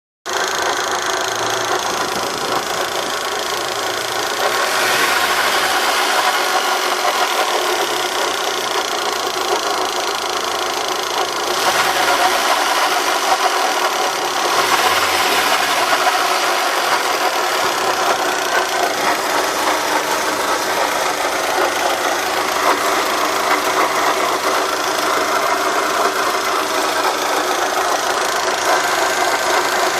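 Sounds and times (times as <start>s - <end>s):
car engine running: 0.3s - 29.9s
odd engine noise: 0.3s - 29.9s.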